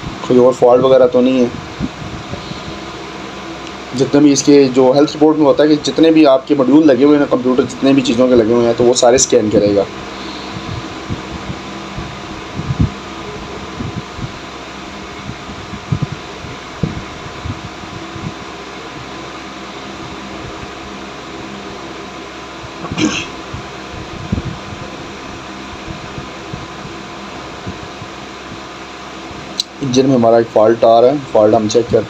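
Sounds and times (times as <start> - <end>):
steady mechanical hum: 0.0 - 32.0
low thumps: 10.5 - 14.4, 15.2 - 19.1.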